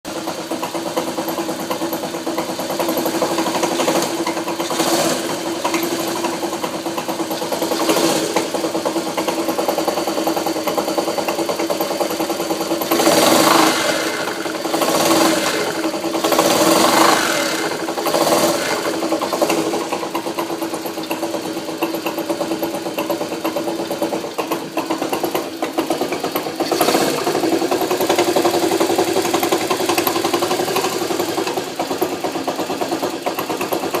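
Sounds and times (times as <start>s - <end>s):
motorcycle engine idling with rattle: 0.1s - 34.0s
engine revving: 2.7s - 11.1s, 12.2s - 21.6s, 25.0s - 34.0s.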